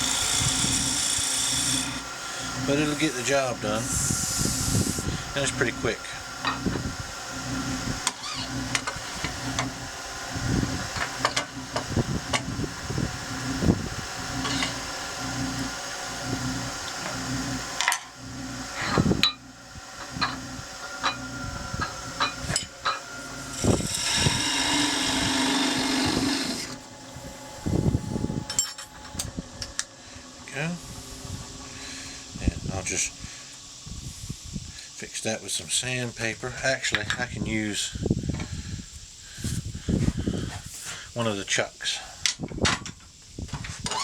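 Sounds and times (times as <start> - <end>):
tool scraping wood: 0.0 - 5.8, 20.0 - 33.6
wood lathe humming: 0.0 - 36.7.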